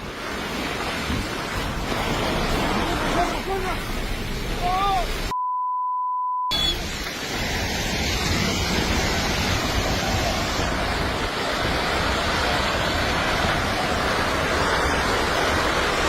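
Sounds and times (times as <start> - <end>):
rushing roar of landslide: 0.0 - 5.3, 6.8 - 16.0
censor bleep: 5.3 - 6.9.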